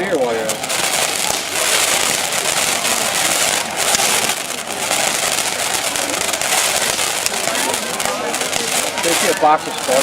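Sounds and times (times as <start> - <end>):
fireworks crackling hiss: 0.0 - 10.0.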